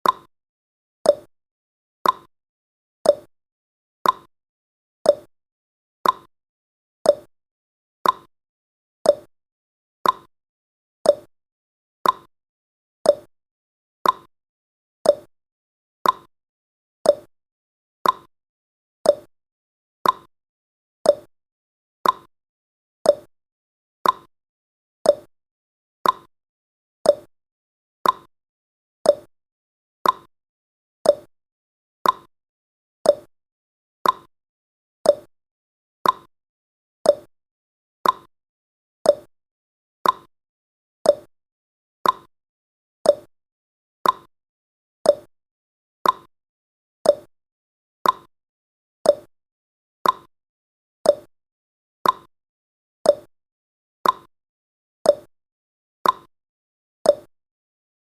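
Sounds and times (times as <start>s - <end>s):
clock ticking: 18.0s - 18.3s, 34.0s - 34.3s, 38.0s - 38.3s, 42.0s - 42.3s, 50.0s - 50.3s.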